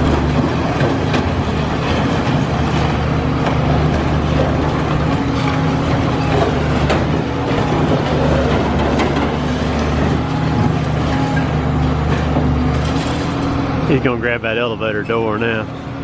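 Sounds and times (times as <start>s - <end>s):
concrete breaking: 0.0s - 11.2s
diesel engine running under load: 0.0s - 16.0s.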